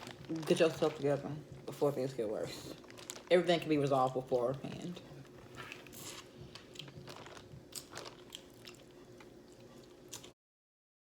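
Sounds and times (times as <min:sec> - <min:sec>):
chewing with small crunches: 0:02.5 - 0:03.3, 0:04.0 - 0:10.4.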